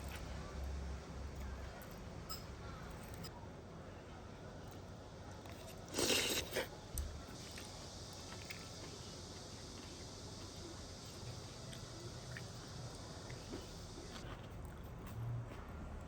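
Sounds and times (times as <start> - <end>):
crunchy bite: 5.6 - 6.7.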